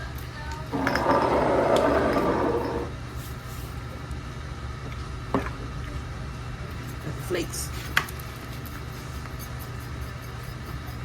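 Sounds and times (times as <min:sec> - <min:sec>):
steady low hum: 0:00.0 - 0:11.0
condiment shaker shaking: 0:08.1 - 0:11.0.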